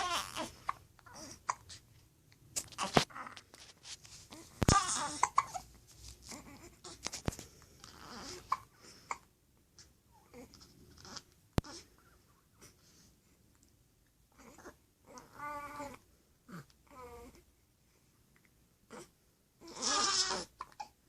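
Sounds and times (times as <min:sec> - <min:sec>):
baby babbling: 0:00.0 - 0:01.7, 0:04.6 - 0:05.6, 0:18.9 - 0:20.9
baby hiccups: 0:04.7 - 0:05.6.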